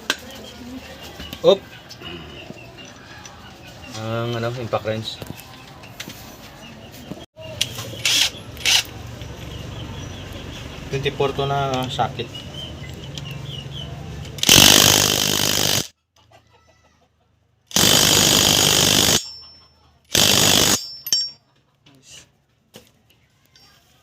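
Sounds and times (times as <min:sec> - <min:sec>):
impact wrench hammering: 0:14.4 - 0:15.9, 0:17.7 - 0:19.4, 0:20.1 - 0:21.4.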